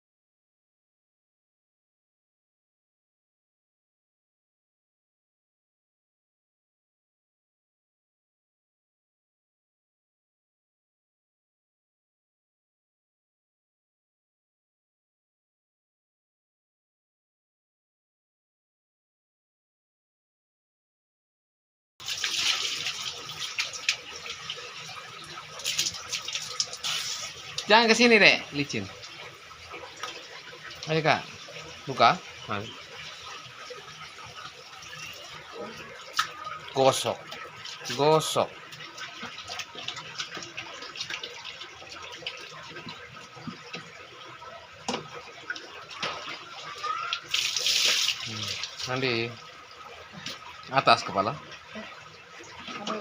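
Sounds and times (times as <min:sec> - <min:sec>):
rainwater pouring and splashing: 0:22.0 - 0:53.0.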